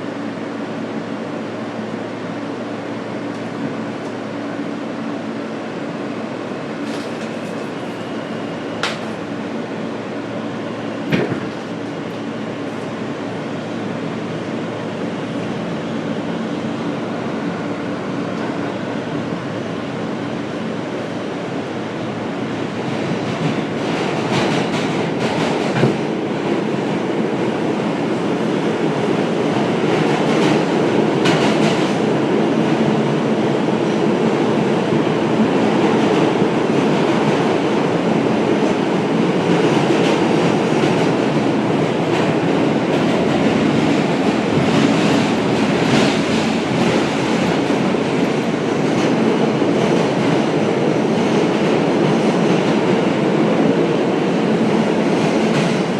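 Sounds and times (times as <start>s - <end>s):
subway train rumble: 0.0s - 55.9s
wheels clicking over rail joints: 6.8s - 8.0s.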